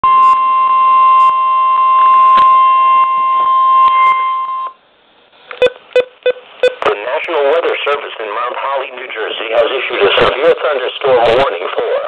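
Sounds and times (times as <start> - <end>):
steady high alarm tone: 0.0 - 4.8.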